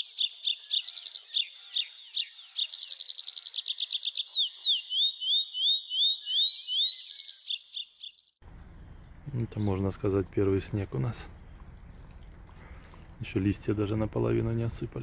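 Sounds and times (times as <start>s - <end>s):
songbird singing trills and whistles: 0.0s - 9.6s.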